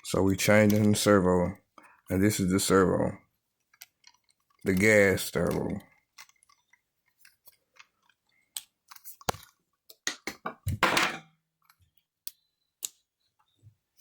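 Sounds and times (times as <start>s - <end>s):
plastic parts clicking and tapping: 0.0s - 2.8s, 3.6s - 10.8s, 11.6s - 14.0s.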